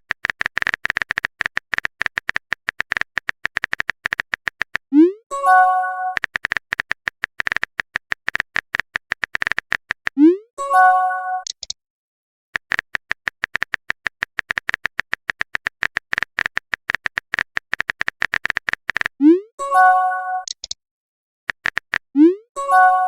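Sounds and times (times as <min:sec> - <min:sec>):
rapid keyboard clicks: 0:00.0 - 0:04.9, 0:06.1 - 0:10.2, 0:12.6 - 0:19.2, 0:21.5 - 0:22.1
chiming notification tone: 0:05.3 - 0:06.2, 0:10.3 - 0:11.5, 0:19.6 - 0:20.5, 0:22.2 - 0:23.0.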